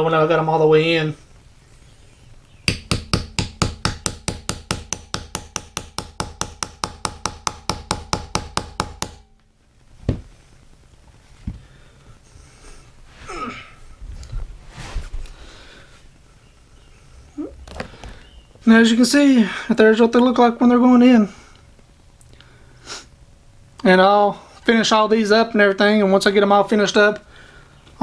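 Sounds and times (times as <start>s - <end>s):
hammer tapping screwdriver: 2.7s - 9.2s.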